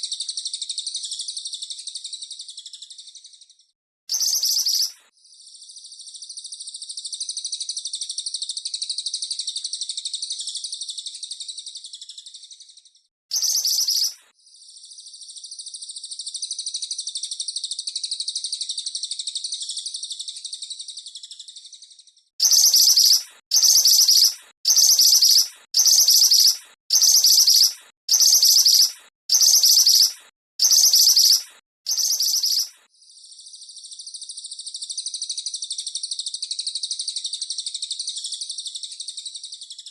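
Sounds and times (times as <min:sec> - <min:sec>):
songbird trilling: 0:04.1 - 0:05.0, 0:13.3 - 0:14.2, 0:22.4 - 0:32.8
sharp bird calls: 0:04.1 - 0:39.9.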